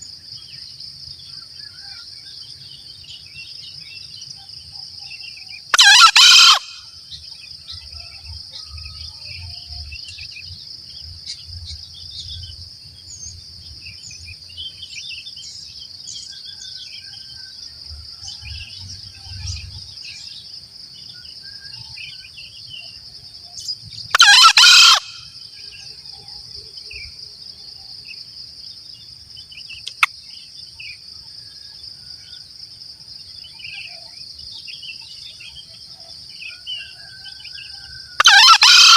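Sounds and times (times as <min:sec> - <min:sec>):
rooster crowing: 0:05.7 - 0:06.8, 0:24.1 - 0:25.3, 0:36.6 - 0:38.9
small birds chirping: 0:28.9 - 0:31.7.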